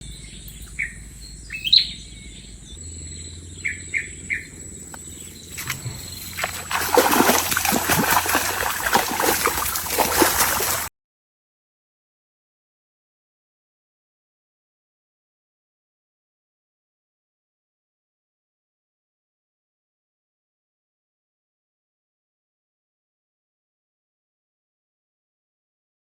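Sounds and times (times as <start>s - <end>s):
birds chirping: 0.0s - 10.9s
water splashing and churning: 5.3s - 10.9s.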